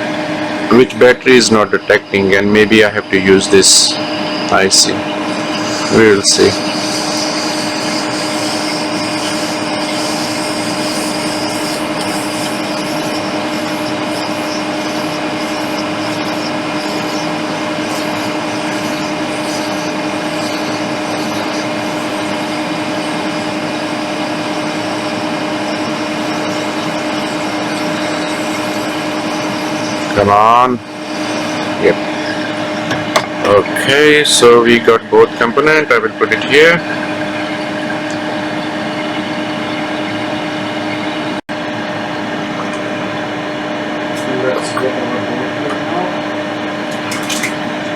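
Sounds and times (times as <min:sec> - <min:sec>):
electric blower whirring: 0:00.0 - 0:34.0.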